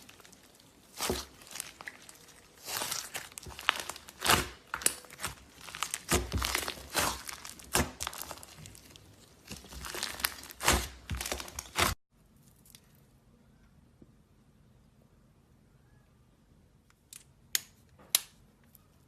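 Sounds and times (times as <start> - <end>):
slime squished by hand: 0.0 - 12.0.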